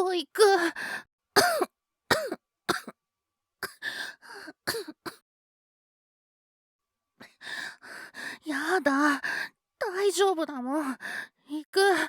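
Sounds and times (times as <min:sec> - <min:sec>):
boy coughing: 0:01.4 - 0:02.9, 0:04.7 - 0:05.2.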